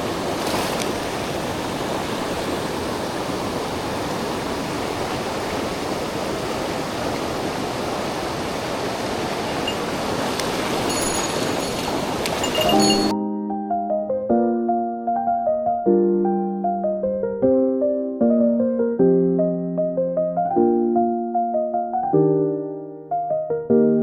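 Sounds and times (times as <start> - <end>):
stream water flowing over rocks: 0.0 - 13.1.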